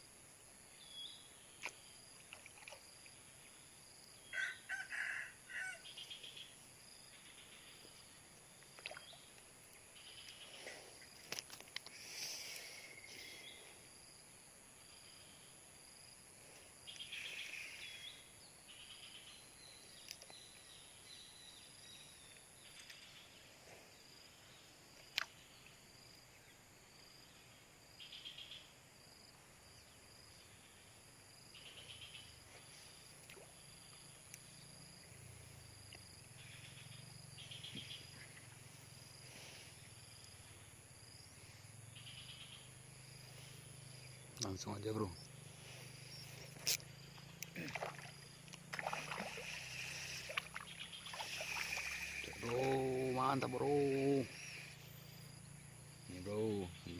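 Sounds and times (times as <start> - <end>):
insects chirping: 0.0 - 56.9
high-pitched insect drone: 40.0 - 56.9.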